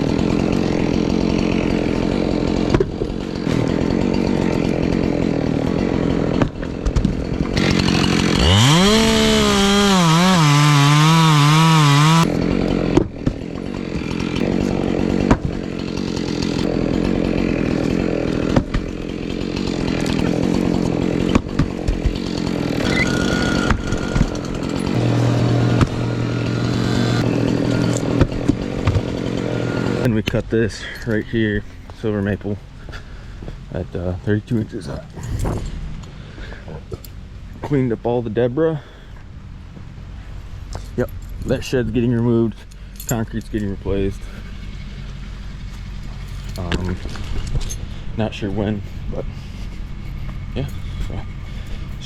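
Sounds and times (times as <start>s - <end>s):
two-stroke chainsaw revving: 0.0s - 31.6s, 41.6s - 47.4s.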